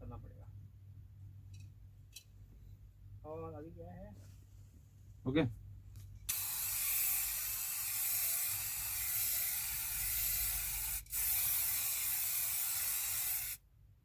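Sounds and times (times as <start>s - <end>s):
aerosol spray can hissing: 6.3s - 13.6s.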